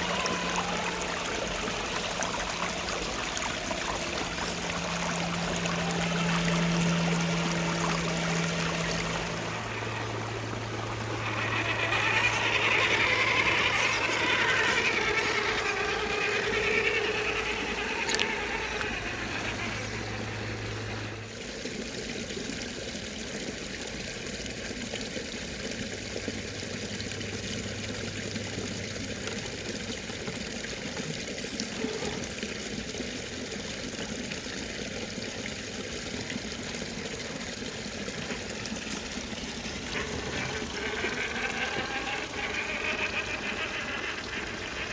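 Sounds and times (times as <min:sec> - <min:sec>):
low steady hum: 0:00.0 - 0:21.5
stream water rushing: 0:00.0 - 0:44.9.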